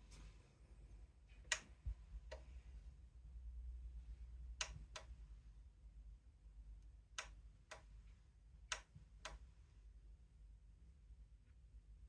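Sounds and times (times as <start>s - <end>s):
faint sharp clicks: 1.4s - 2.5s, 4.6s - 5.1s, 6.8s - 7.9s, 8.7s - 9.4s.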